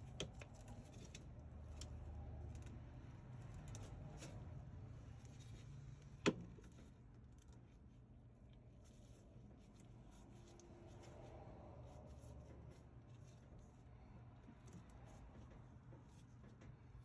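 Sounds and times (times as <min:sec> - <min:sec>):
faint small taps and rustles: 0:12.0 - 0:17.0.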